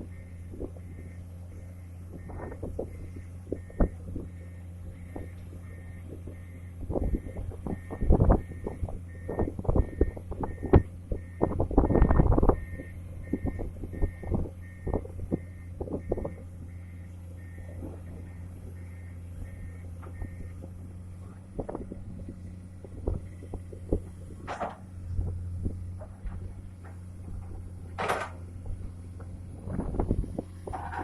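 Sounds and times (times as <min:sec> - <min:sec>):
warning alarm beeping: 0:00.0 - 0:20.6
diesel engine running: 0:00.0 - 0:31.0
metal clanks and knocks: 0:24.4 - 0:24.9, 0:25.9 - 0:30.0, 0:30.6 - 0:31.0.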